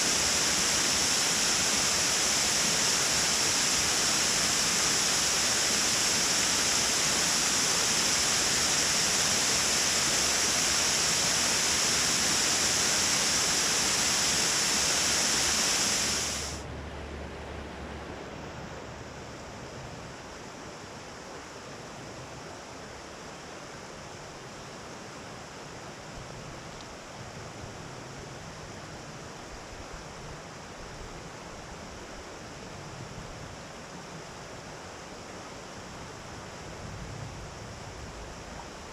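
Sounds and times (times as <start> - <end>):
water rushing over dam: 0.0 - 16.6.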